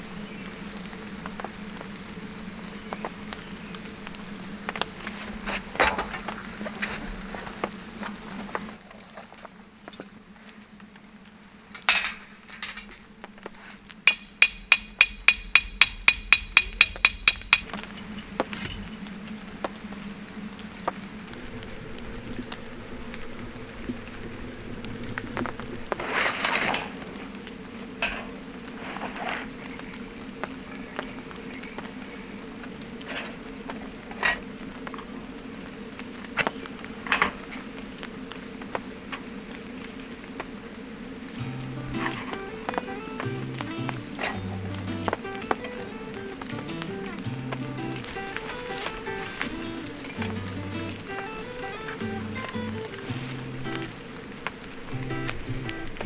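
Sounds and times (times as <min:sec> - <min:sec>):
lantern scraping: 0:00.0 - 0:10.1, 0:21.2 - 0:30.0, 0:32.6 - 0:35.2, 0:36.3 - 0:37.8, 0:41.4 - 0:56.0
metallic ticks of lantern: 0:14.1 - 0:17.7
steady low hum: 0:41.4 - 0:48.7.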